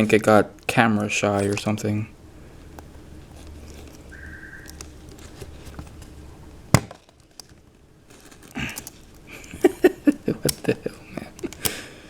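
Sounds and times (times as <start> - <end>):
brief squeak: 4.1 - 4.7.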